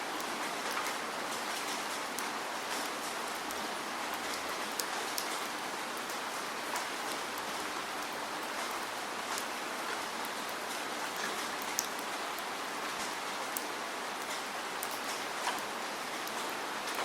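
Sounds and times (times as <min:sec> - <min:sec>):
raindrops ticking on a surface: 0:00.0 - 0:17.0
steady rain hiss: 0:00.0 - 0:17.0.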